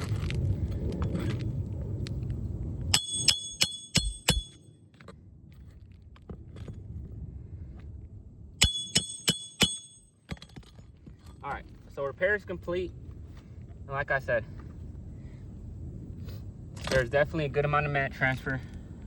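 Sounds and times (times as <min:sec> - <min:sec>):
hatchet hammering a nail: 0:03.0 - 0:04.6, 0:08.6 - 0:10.0.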